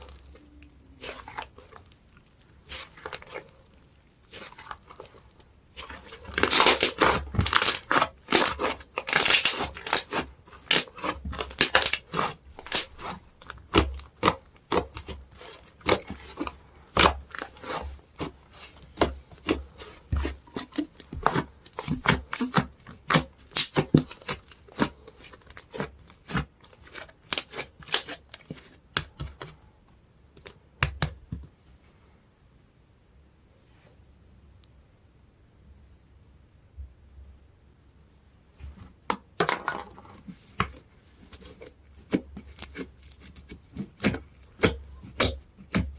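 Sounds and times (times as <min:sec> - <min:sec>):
slime popping and peeling: 0:05.8 - 0:18.3, 0:20.2 - 0:29.1.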